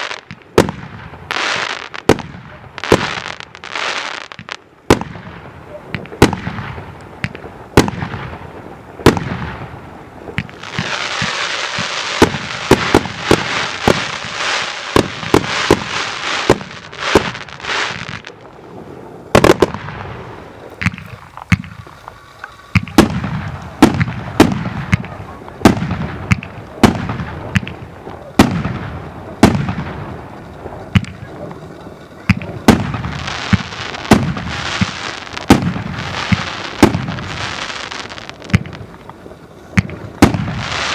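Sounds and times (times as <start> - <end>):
fireworks dense crackling: 0.0 - 40.9
fireworks sharp bangs: 0.0 - 40.9.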